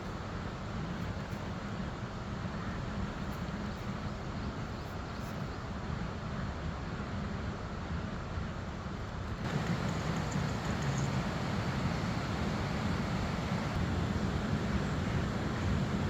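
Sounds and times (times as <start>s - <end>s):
river rushing: 9.4s - 16.0s.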